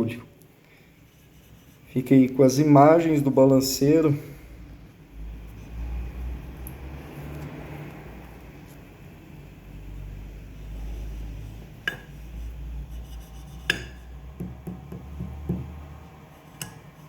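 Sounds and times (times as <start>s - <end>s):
soft knocks: 14.4s - 15.8s.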